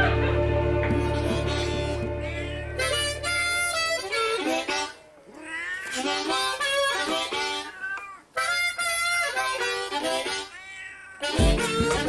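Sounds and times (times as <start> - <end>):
music: 0.0 - 4.7, 11.3 - 12.0
cat meowing: 1.0 - 3.6, 5.1 - 6.2, 7.6 - 8.4, 10.5 - 12.0.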